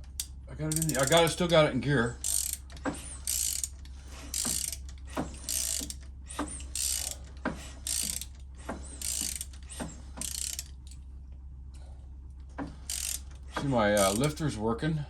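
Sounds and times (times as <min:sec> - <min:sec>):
ratchet wrench clicking: 0:00.0 - 0:01.6, 0:02.2 - 0:11.0, 0:12.8 - 0:14.4.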